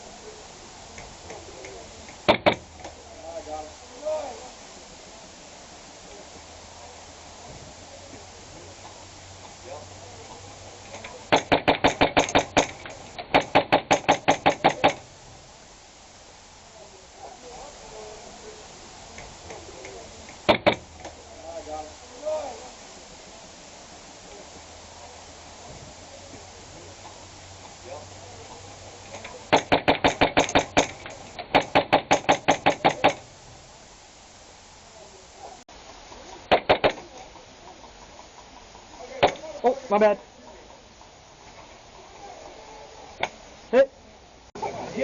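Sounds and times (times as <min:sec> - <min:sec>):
airsoft gun firing: 0:02.2 - 0:02.7, 0:11.0 - 0:15.1, 0:29.2 - 0:33.3.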